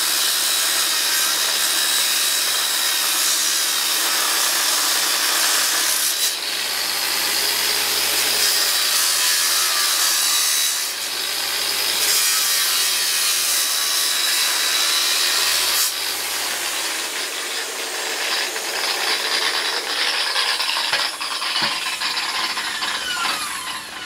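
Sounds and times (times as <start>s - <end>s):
angle grinder cutting metal: 0.0s - 24.0s.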